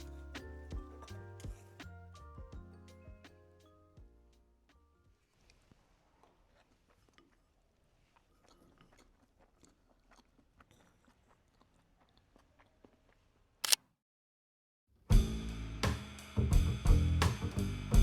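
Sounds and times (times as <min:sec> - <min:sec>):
music: 0:00.0 - 0:05.2, 0:15.1 - 0:18.0
food crunching and clicking: 0:06.1 - 0:13.8.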